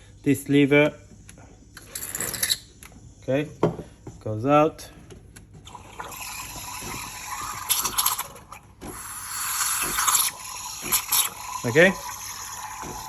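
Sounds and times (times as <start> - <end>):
steam frother hissing: 6.0 - 13.0.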